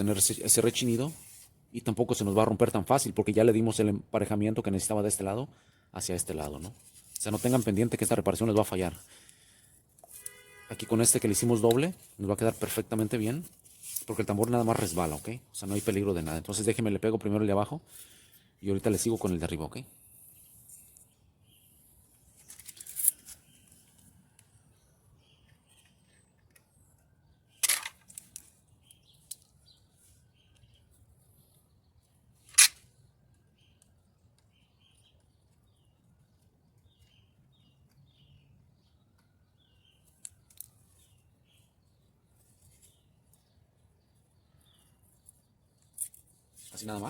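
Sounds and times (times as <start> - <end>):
faint bird chirps: 28.6 - 47.0.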